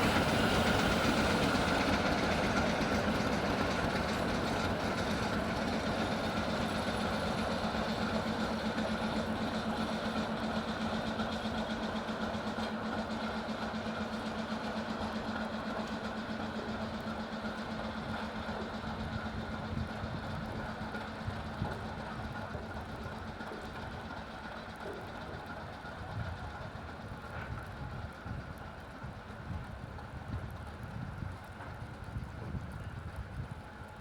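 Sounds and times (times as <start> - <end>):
train wheels clattering on rails: 0.0 - 34.0.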